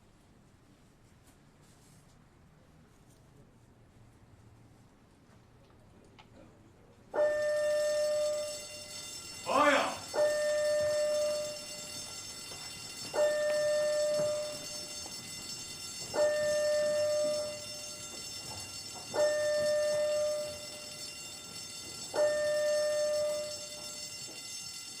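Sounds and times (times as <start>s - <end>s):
fire alarm tone pulsing: 7.2s - 25.0s.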